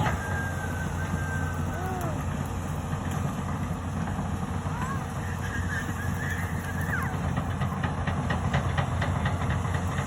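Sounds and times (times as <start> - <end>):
high squeals: 0.0 - 2.3, 4.7 - 7.3
excavator diesel engine running: 0.0 - 10.0.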